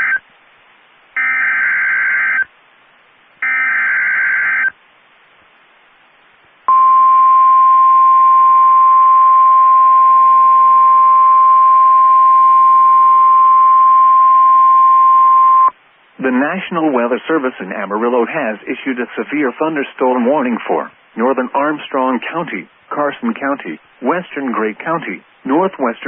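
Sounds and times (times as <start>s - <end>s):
faint radio hiss: 0.0s - 26.0s
steady warning alarm tone: 1.2s - 2.5s, 3.4s - 4.7s.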